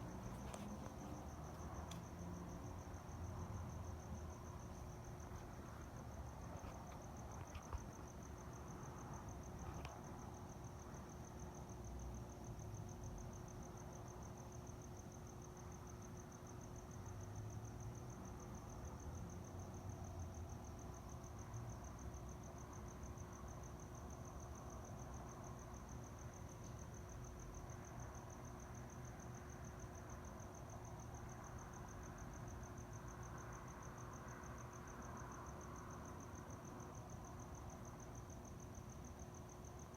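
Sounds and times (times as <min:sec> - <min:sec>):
crickets chirping: 0:00.0 - 0:39.9
faint low hum: 0:00.0 - 0:39.9.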